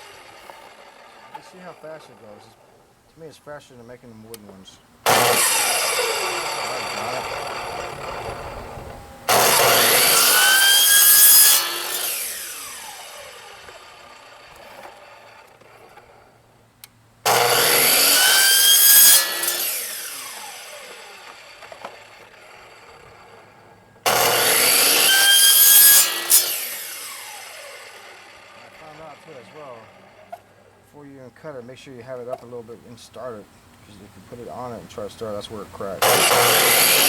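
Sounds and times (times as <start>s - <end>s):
power saw cutting plastic gutter: 0.0s - 2.6s, 5.1s - 16.3s, 17.3s - 30.5s, 36.0s - 37.0s
saw blade whining down: 0.0s - 2.8s, 5.0s - 16.4s, 17.2s - 31.6s, 34.3s - 37.0s.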